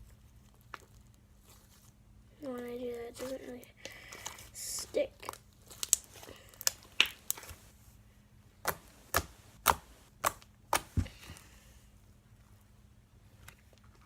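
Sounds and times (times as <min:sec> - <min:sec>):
slime clicking and popping: 0:05.3 - 0:07.5, 0:08.7 - 0:10.9.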